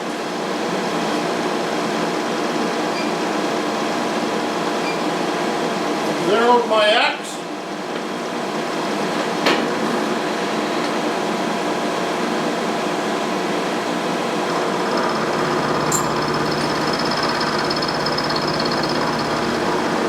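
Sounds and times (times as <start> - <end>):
milling machine running: 14.4 - 20.0
high whine: 14.8 - 20.0.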